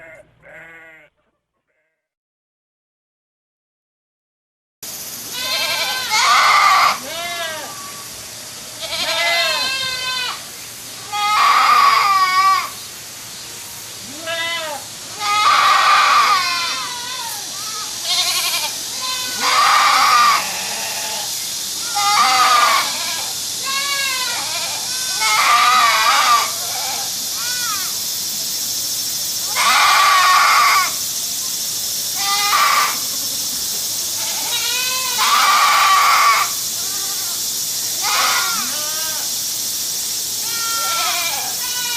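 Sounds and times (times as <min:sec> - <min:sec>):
goat bleating: 0:00.0 - 0:02.0, 0:05.3 - 0:08.0, 0:08.8 - 0:10.4, 0:11.0 - 0:12.8, 0:14.0 - 0:27.9, 0:29.5 - 0:31.0, 0:32.2 - 0:33.1, 0:34.2 - 0:37.4, 0:38.0 - 0:39.3, 0:40.4 - 0:41.9
faint steady hiss: 0:04.8 - 0:41.9.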